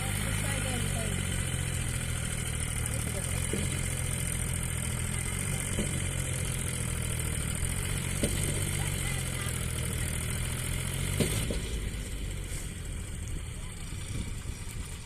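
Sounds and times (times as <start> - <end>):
diesel engine humming: 0.0 - 15.0.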